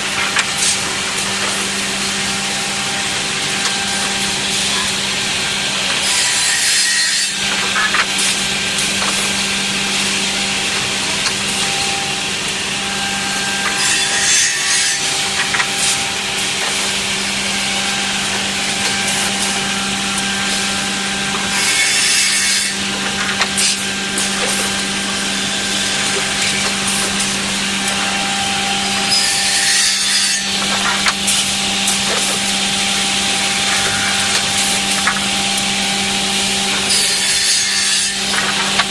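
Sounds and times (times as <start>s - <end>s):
saws cutting through wood: 0.0s - 38.9s
machine motor hum: 22.7s - 38.9s.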